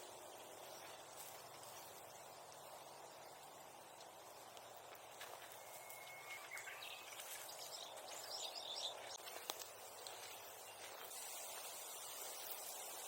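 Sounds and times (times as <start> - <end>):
birds chirping: 0.0 - 13.0
outdoor hiss: 0.0 - 13.0.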